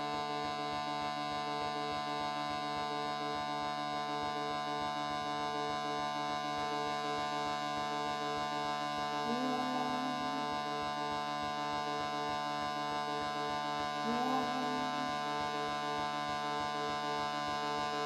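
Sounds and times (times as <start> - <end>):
shruti box drone: 0.0 - 18.0
wordless voice holding a note: 9.2 - 10.7, 14.0 - 15.7.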